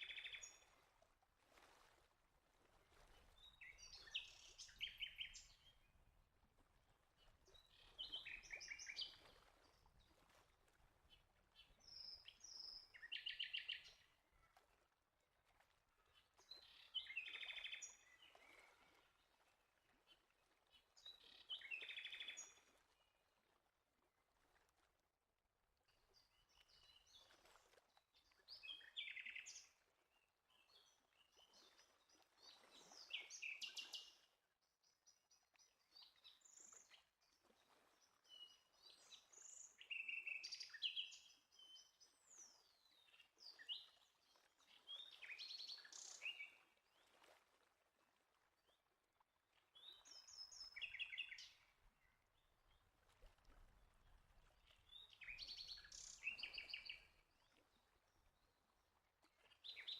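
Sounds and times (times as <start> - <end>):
faint songbirds chirping: 3.3 - 6.1, 11.2 - 14.2, 16.0 - 18.9, 28.3 - 29.8, 30.5 - 34.3, 34.9 - 47.0, 49.7 - 53.0, 54.4 - 58.7.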